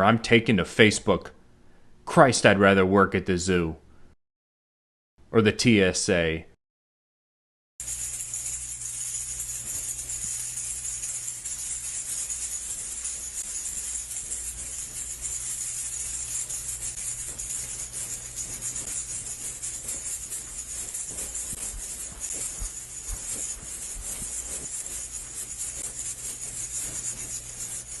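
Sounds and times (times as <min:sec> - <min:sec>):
jingling percussion: 0:07.8 - 0:28.0
low steady hum: 0:07.8 - 0:28.0.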